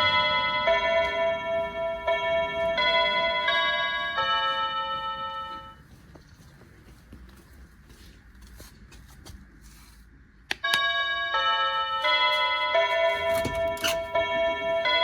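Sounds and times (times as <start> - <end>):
electronic doorbell chime melody: 0.0 - 5.8, 10.7 - 15.0.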